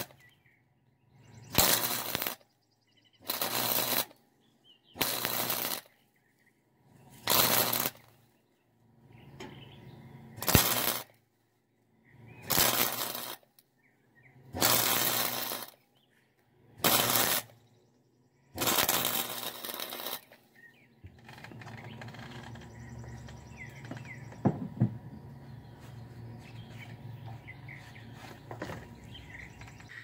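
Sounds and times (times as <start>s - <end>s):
electric welding bursts: 0.0s - 0.2s, 1.3s - 2.5s, 3.1s - 4.2s, 4.9s - 6.0s, 7.1s - 8.2s, 10.3s - 11.2s, 12.4s - 13.6s, 14.4s - 15.9s, 16.8s - 17.7s, 18.5s - 24.4s.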